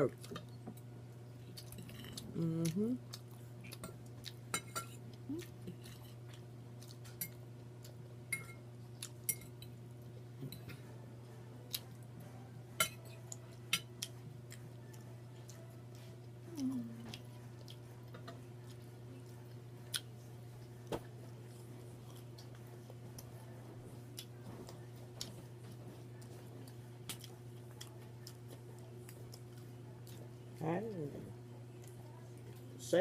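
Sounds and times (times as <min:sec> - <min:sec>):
steady low hum: 0:00.0 - 0:33.0
chewing: 0:01.3 - 0:08.0, 0:11.7 - 0:12.0, 0:13.0 - 0:20.8, 0:21.4 - 0:30.6, 0:31.7 - 0:32.7
utensils clinking on dishes: 0:08.3 - 0:08.6.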